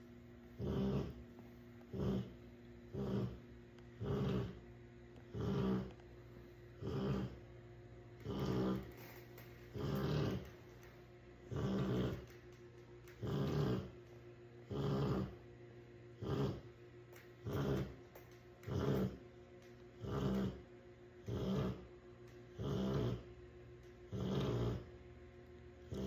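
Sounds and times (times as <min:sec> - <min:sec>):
dog snoring: 0:00.6 - 0:04.6, 0:05.2 - 0:06.0, 0:06.8 - 0:07.5, 0:08.2 - 0:10.8, 0:11.4 - 0:12.4, 0:13.1 - 0:14.0, 0:14.6 - 0:15.4, 0:16.1 - 0:16.8, 0:17.4 - 0:19.2, 0:20.0 - 0:21.9, 0:22.5 - 0:23.3, 0:24.0 - 0:25.0, 0:25.8 - 0:26.0.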